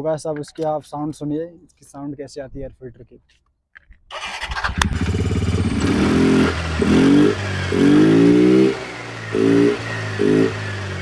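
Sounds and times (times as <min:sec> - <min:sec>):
scooter engine revving: 0:04.1 - 0:11.0.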